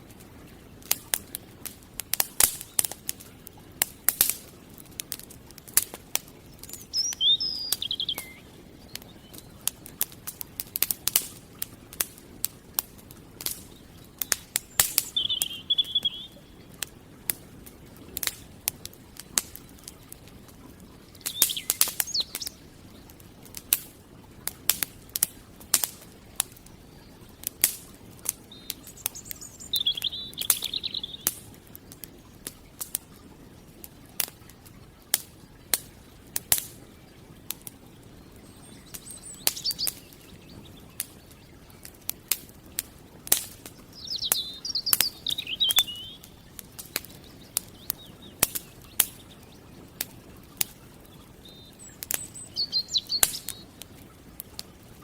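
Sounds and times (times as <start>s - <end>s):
campfire crackling and popping: 0.0s - 55.0s
bird chirping: 6.4s - 9.6s, 13.6s - 16.7s, 21.1s - 22.7s, 28.5s - 31.4s, 38.2s - 41.7s, 43.8s - 49.8s, 51.0s - 53.7s.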